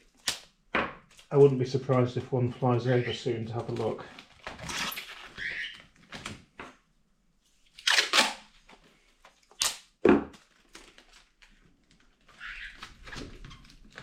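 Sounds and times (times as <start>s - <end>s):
tape sharp cracks: 0.1s - 1.3s, 7.8s - 8.5s, 9.5s - 10.0s
sticky tape ripping: 7.8s - 8.5s
cardboard crinkling: 10.3s - 14.0s.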